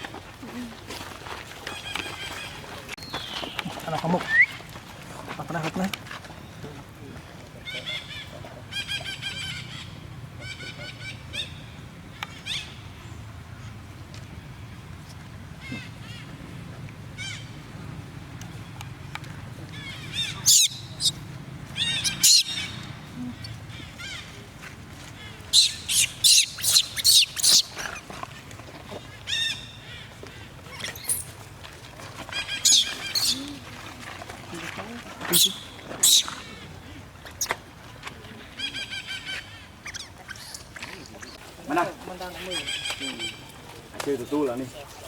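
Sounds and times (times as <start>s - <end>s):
monkeys squeaky calls: 19.8s - 24.2s, 25.5s - 28.1s, 30.7s - 31.3s, 32.3s - 33.6s, 35.3s - 36.6s, 38.7s - 40.7s, 42.4s - 43.4s.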